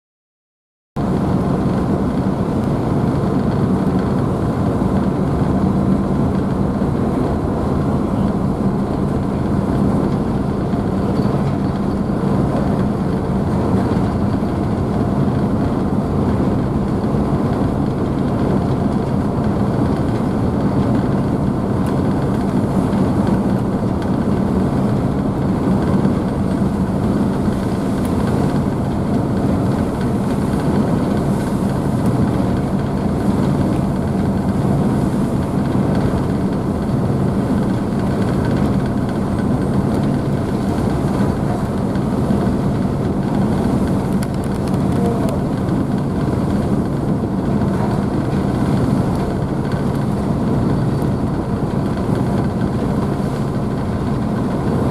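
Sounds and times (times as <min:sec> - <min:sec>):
ship engines humming: 0:01.0 - 0:54.9
wake rushing and spray: 0:24.5 - 0:54.9.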